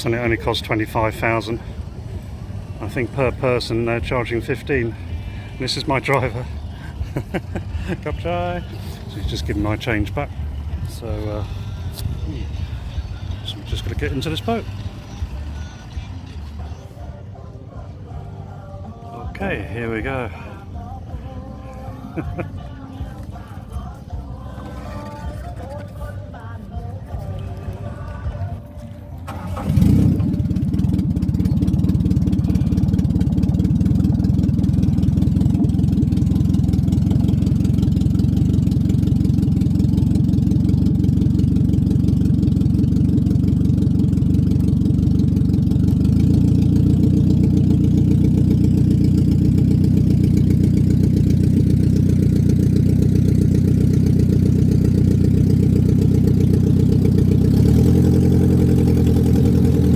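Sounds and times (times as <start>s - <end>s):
boat engine running: 0.0s - 17.2s, 19.4s - 59.9s.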